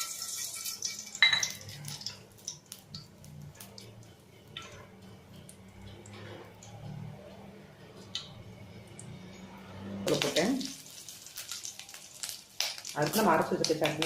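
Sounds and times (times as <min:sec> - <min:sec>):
metal clink against a pan: 0:00.0 - 0:02.2
seeds popping in hot oil: 0:00.0 - 0:14.0.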